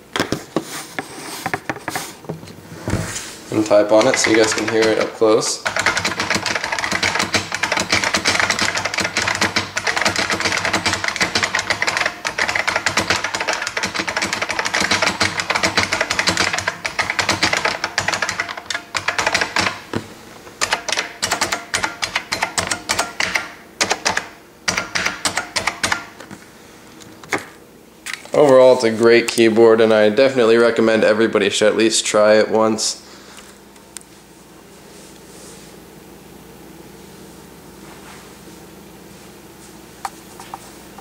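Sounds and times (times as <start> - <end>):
keyboard keys clacking: 3.7 - 19.8.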